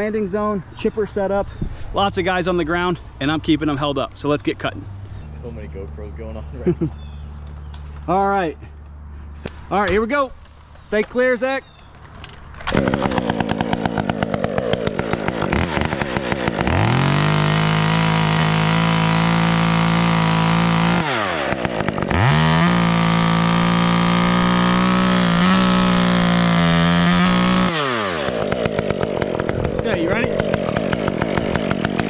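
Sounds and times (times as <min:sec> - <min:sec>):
chainsaw cutting wood: 0:12.5 - 0:32.0.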